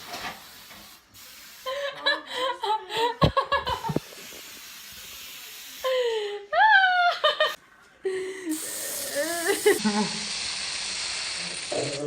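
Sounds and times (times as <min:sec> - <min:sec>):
steady hiss: 0:00.0 - 0:01.8, 0:03.7 - 0:06.1, 0:08.4 - 0:12.0.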